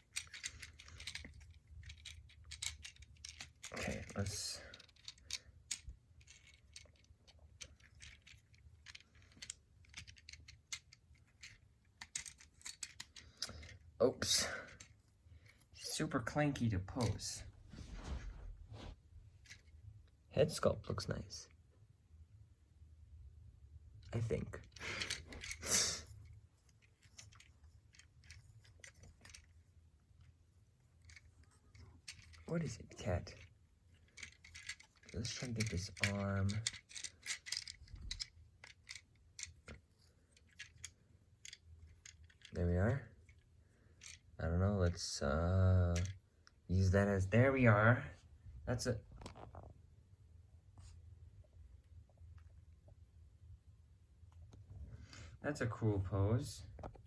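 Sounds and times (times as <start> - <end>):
plastic toy joints clicking: 0.0 - 13.8, 24.7 - 25.7, 26.8 - 29.6, 31.0 - 42.6, 44.0 - 44.3.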